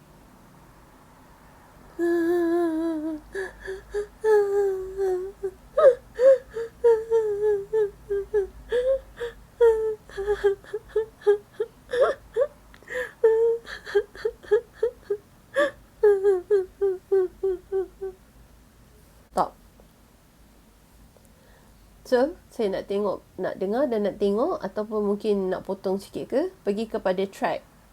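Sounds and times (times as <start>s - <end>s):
woman sobbing: 2.0s - 18.2s
woman wailing: 2.0s - 18.2s.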